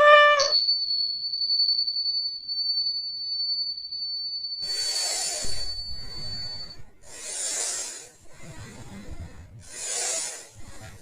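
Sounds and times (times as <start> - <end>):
steady high whine: 4.6 - 11.0.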